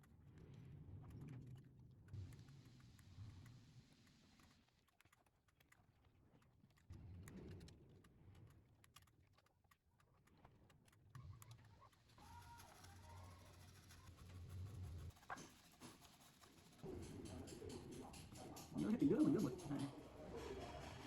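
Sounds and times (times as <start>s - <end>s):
small clicks and taps: 0.0s - 12.4s.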